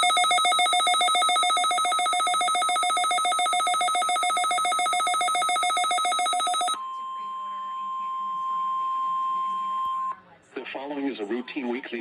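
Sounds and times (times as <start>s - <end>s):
pulsing electronic alarm tone: 0.0s - 6.8s.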